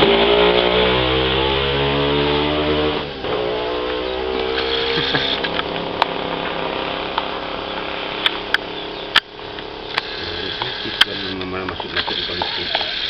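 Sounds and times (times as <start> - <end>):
motor humming: 0.0 - 13.0
sharp clicks: 3.8 - 6.2, 7.1 - 13.0.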